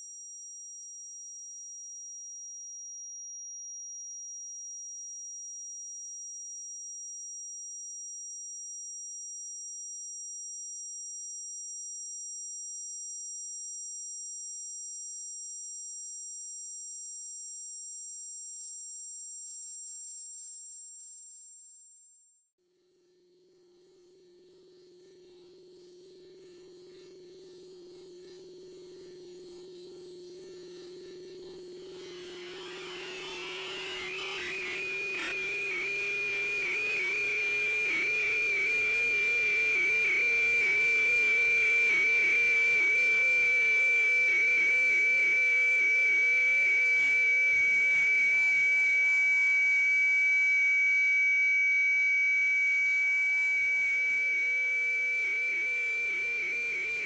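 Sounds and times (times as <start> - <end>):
low electronic tone: 23.2 - 57.0
wavering mid-pitched tone: 23.6 - 57.0
high whistle-like tone: 23.8 - 57.0.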